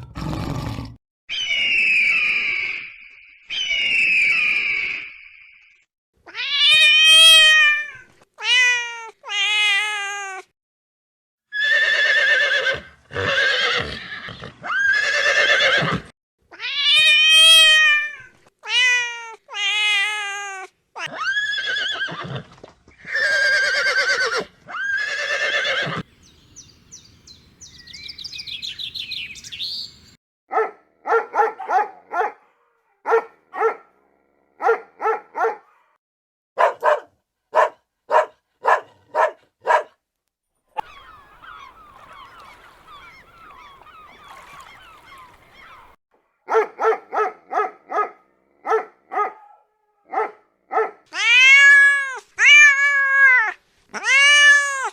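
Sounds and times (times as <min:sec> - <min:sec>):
dog barking: 0:30.5 - 0:34.0, 0:34.6 - 0:36.0, 0:36.6 - 0:40.0, 0:46.4 - 0:51.1
long wavering animal calls: 0:40.8 - 0:46.0
thin squeaky calls: 0:40.8 - 0:46.0.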